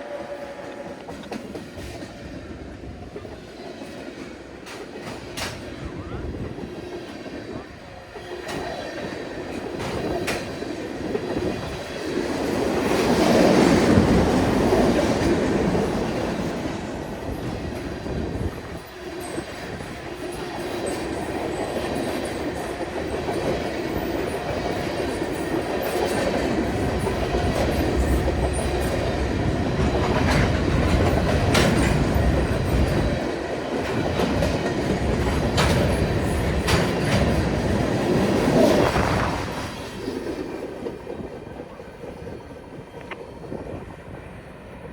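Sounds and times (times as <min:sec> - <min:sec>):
train wheels clattering over rails: 0:00.0 - 0:06.0, 0:06.6 - 0:44.0.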